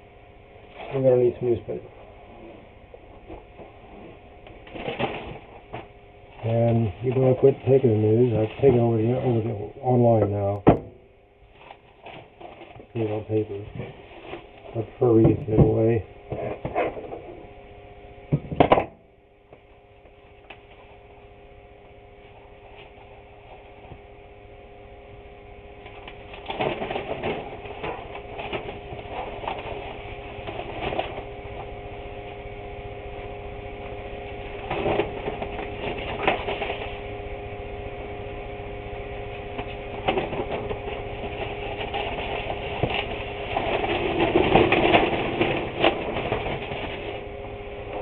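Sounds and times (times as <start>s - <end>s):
electrical hum: 0.0s - 48.0s
newspaper rustling: 34.6s - 37.0s, 40.0s - 47.2s.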